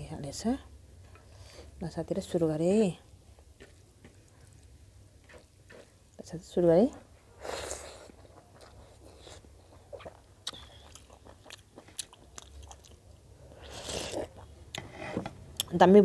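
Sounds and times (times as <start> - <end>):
person chewing: 3.6 - 6.0, 7.5 - 14.6
wet mouth clicks: 10.0 - 11.6.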